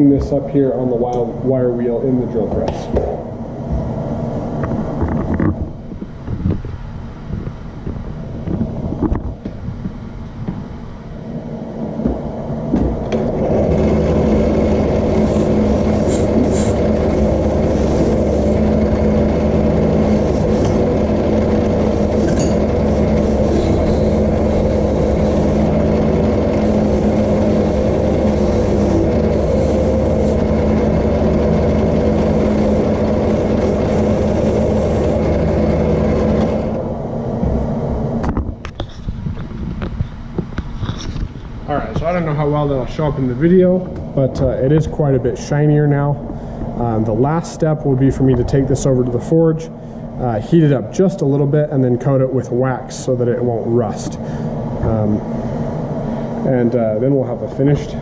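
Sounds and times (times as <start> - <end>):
drill press wire wheel brushing steel: 13.3 - 36.7.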